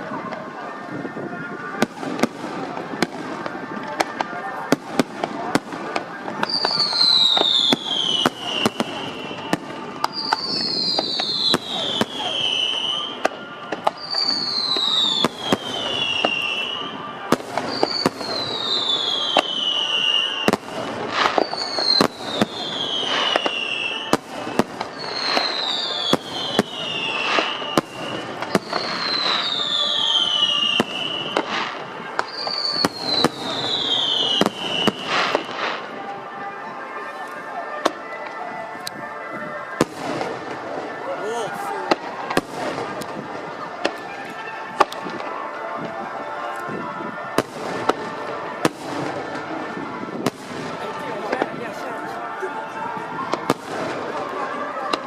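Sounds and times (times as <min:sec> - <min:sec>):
fireworks bangs and crackles: 0:00.0 - 0:55.0
falling firework whistle: 0:06.4 - 0:36.1.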